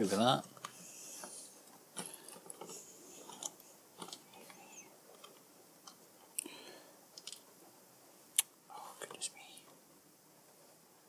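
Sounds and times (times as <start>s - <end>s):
plastic parts rustling: 2.0s - 5.4s
small plastic parts clicking: 7.2s - 7.4s.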